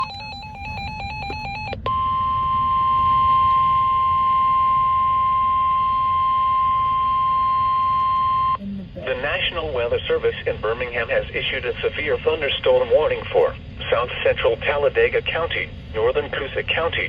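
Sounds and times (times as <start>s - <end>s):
loud steady alarm beep: 0.0s - 8.6s
warbling digital data tones: 0.0s - 9.0s
faint radio static: 2.5s - 17.0s.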